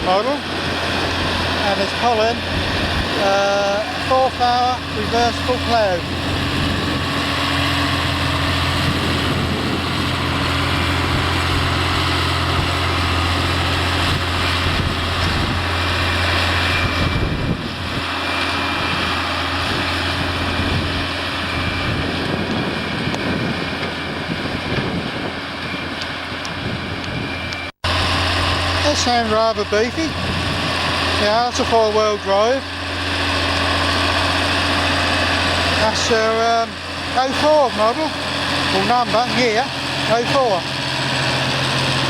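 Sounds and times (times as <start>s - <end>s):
tractor engine under load: 0.0s - 42.0s.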